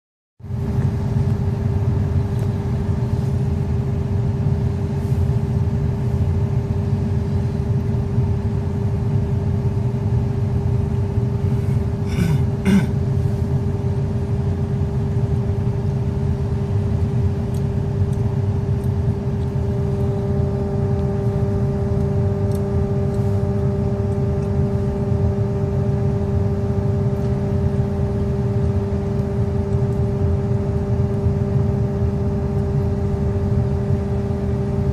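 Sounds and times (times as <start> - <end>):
excavator diesel engine running: 10.5 - 14.6.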